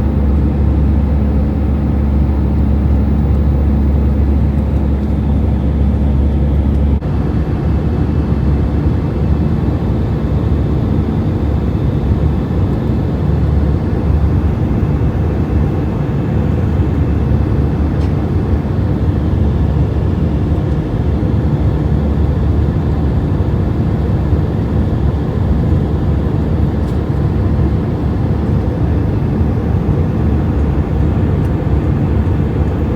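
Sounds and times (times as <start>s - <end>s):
low steady hum: 0.0s - 7.0s
engine and airflow rumble: 0.0s - 32.9s.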